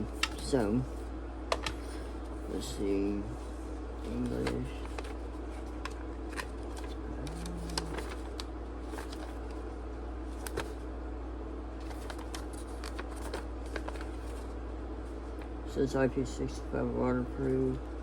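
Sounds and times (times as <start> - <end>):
low background hum: 0.0 - 18.0
paper pages turning: 4.0 - 9.7, 10.3 - 10.8, 11.8 - 14.5.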